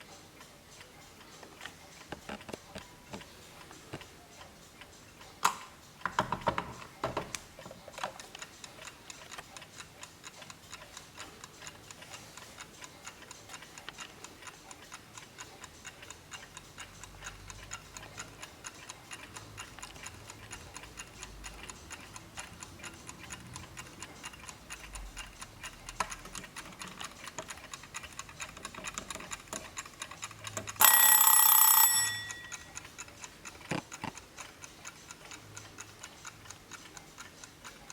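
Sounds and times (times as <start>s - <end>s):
wall clock ticking: 0.0s - 37.9s
timer bell ringing: 30.8s - 32.8s.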